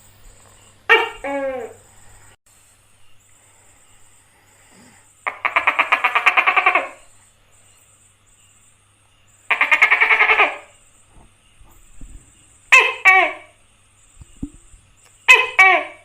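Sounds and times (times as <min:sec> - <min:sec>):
gecko pulsed calls: 0:03.0 - 0:16.0.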